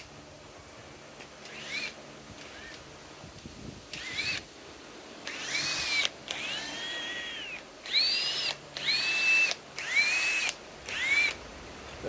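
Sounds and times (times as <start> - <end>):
impact driver motor whine: 1.4 - 2.9, 3.9 - 4.5, 5.2 - 11.4.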